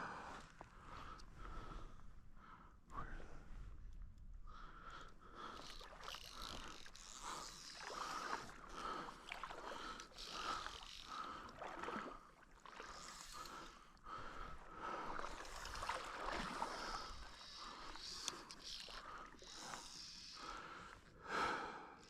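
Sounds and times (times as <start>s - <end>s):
lake water splashing: 5.6s - 19.9s.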